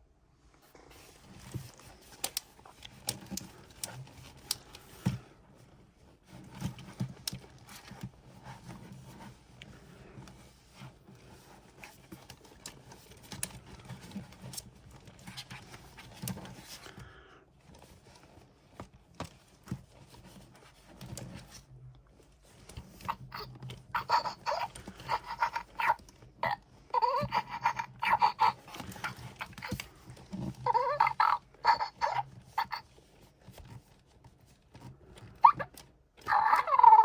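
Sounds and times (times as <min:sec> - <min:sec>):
toy cub calls: 0:22.9 - 0:33.0, 0:35.4 - 0:37.0.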